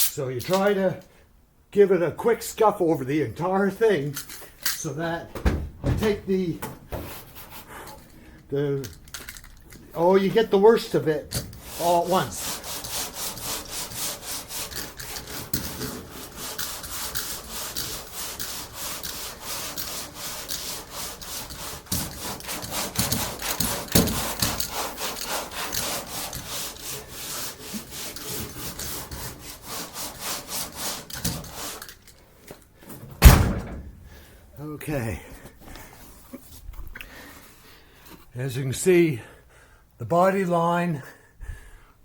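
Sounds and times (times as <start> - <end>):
sandpaper rasping: 10.0 - 32.0.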